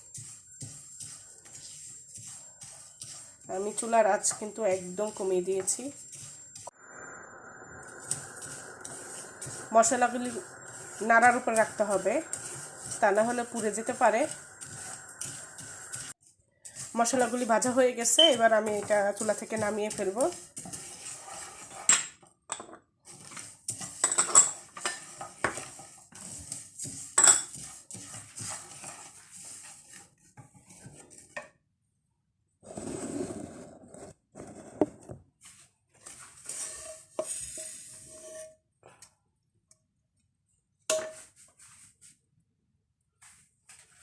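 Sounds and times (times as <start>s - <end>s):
metal utensil scraping pan: 0.0s - 6.7s, 7.9s - 22.2s, 23.0s - 31.4s, 36.0s - 38.6s.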